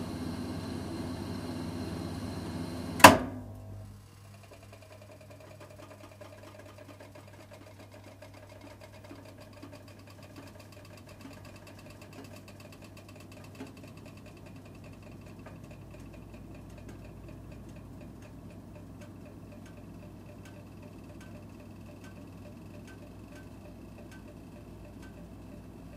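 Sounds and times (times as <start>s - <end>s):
fan heater hum: 0.0s - 4.3s, 12.5s - 25.9s.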